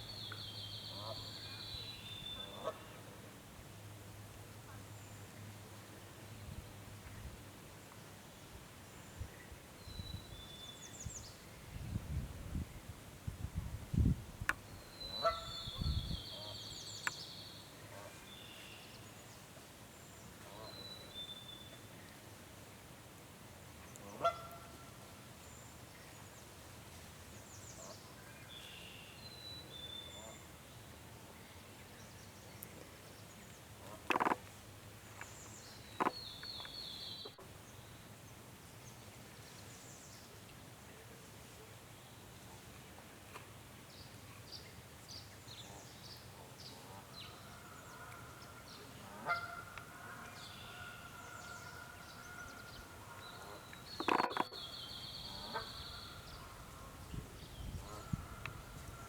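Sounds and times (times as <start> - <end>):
quiet wetland background: 0.0 - 59.0
goose honking: 49.0 - 50.2
songbird trilling: 52.2 - 56.4.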